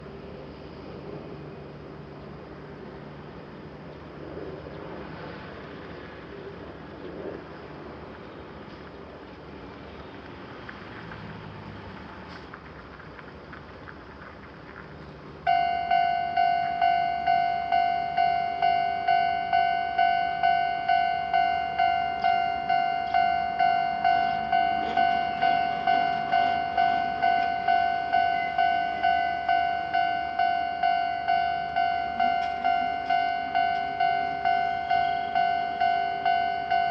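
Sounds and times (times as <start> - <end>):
railroad crossing warning bell: 15.4 - 36.9.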